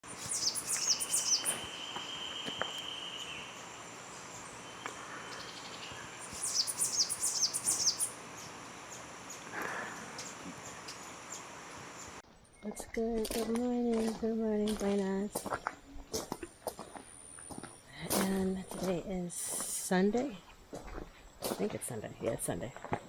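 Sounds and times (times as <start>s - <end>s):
birds whistling falling notes: 0.0s - 8.5s
high insect buzz: 0.0s - 12.2s.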